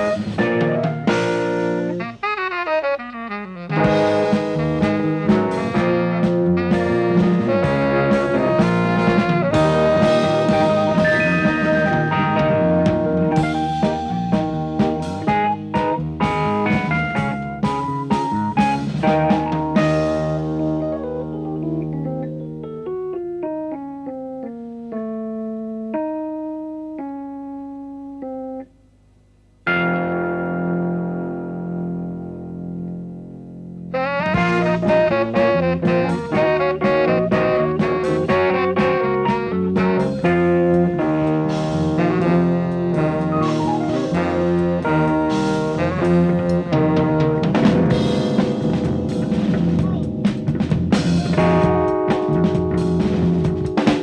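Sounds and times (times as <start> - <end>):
saxophone: 0.0 - 22.0, 33.9 - 54.0
jazz fusion band playing: 0.0 - 26.8, 33.8 - 54.0
keyboard held notes: 0.0 - 28.8, 29.5 - 54.0.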